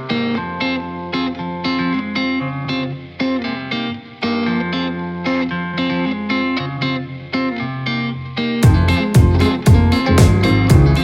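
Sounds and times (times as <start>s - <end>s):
plucked guitar notes: 0.0s - 11.0s
music beat: 8.6s - 11.0s.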